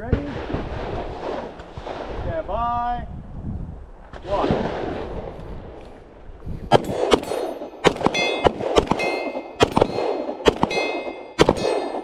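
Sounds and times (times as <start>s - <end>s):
pistol shots: 6.7s - 12.0s
bullets ringing on steel targets: 6.8s - 12.0s.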